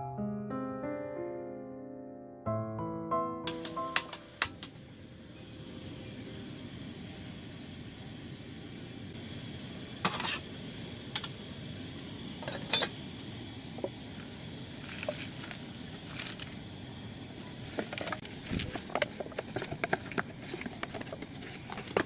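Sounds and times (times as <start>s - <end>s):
small objects clicking and knocking: 17.7s - 22.0s.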